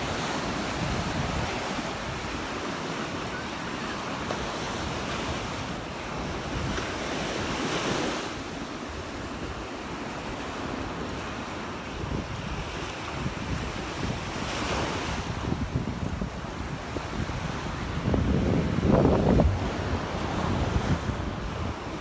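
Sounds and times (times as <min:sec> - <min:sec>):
surf washing onto beach: 0:00.0 - 0:22.0
wind buffeting microphone: 0:00.0 - 0:22.0.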